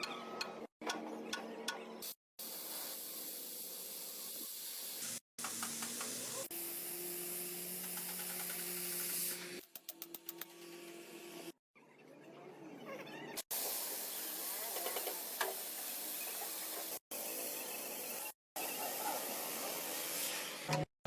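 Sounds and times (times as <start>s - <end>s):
welding arc frying hiss: 2.4s - 9.6s, 13.5s - 20.8s.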